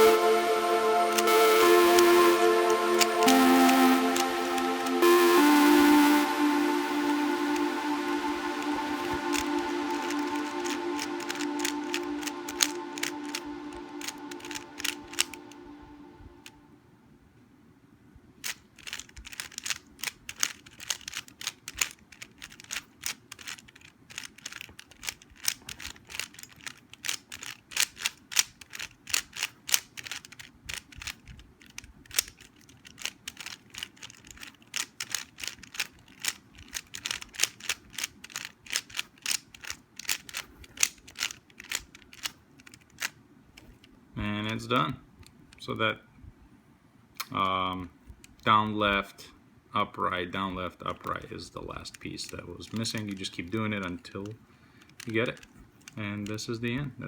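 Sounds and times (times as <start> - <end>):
musical tone: 0.0 - 16.7
plastic puzzle cube clicking: 14.0 - 15.3, 18.4 - 43.9, 52.3 - 53.6, 54.2 - 56.4.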